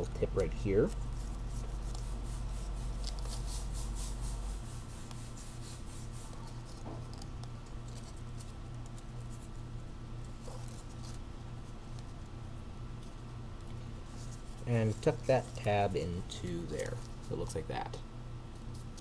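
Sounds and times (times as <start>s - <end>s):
steady low hum: 0.0s - 19.0s
paper crinkling and rustling: 13.0s - 17.6s.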